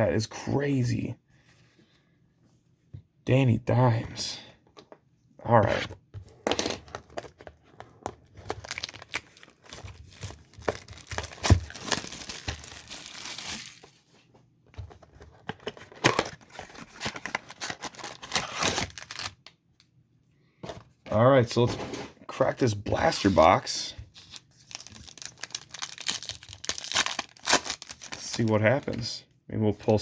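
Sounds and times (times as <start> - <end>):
plastic wrapping crinkling: 7.0 - 14.0, 16.1 - 19.5, 24.2 - 29.1
long plastic tear: 17.4 - 19.5, 24.7 - 28.5.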